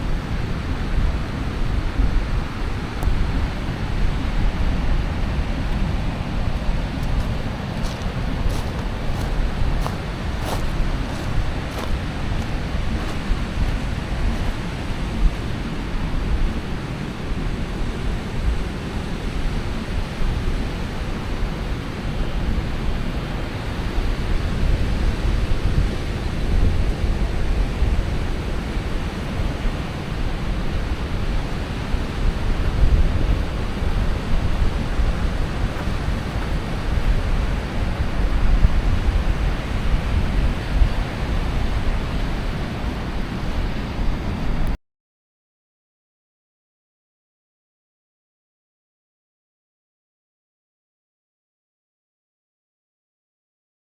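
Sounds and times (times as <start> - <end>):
wind buffeting microphone: 27.9 - 44.6.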